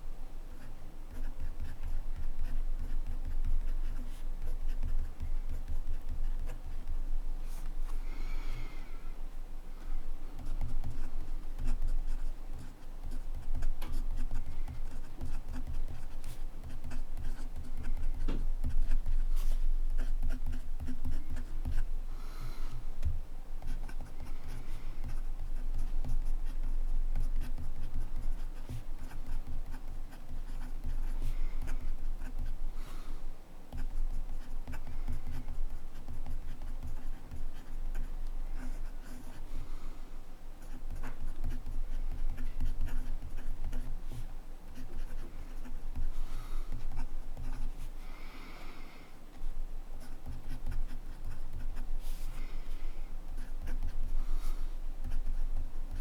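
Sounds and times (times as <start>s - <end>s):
fountain pen scratching on paper: 10.4s - 21.8s, 23.7s - 32.6s, 33.7s - 39.4s, 40.6s - 47.7s.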